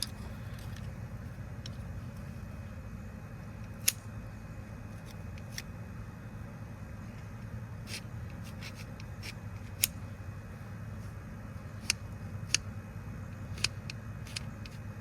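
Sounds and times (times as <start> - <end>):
steady low hum: 0.0 - 15.0
metal tool clicks: 13.5 - 14.8.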